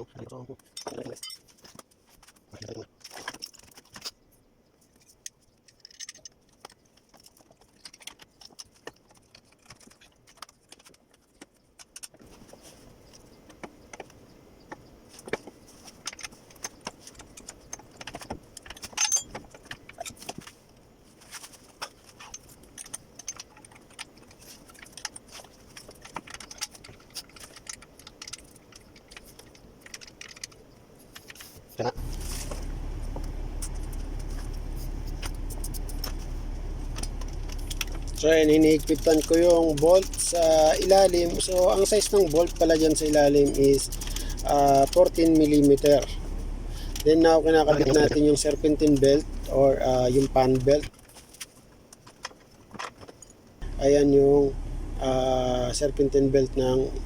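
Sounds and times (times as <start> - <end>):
wrench clanking on metal: 18.8 - 19.4.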